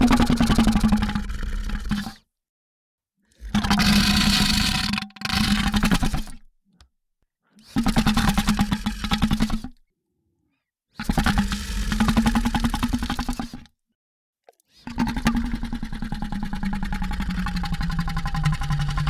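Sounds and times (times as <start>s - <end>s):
monster rattle-growl: 0.0s - 2.3s, 3.3s - 6.1s, 11.1s - 13.6s, 14.9s - 19.0s.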